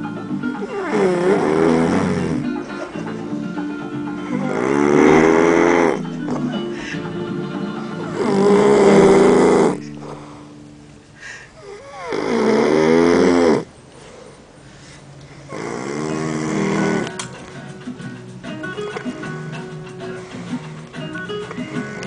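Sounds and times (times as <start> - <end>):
man snoring heavily: 0.6 - 2.6, 4.2 - 7.0, 8.0 - 10.5, 11.6 - 13.7, 15.5 - 17.1.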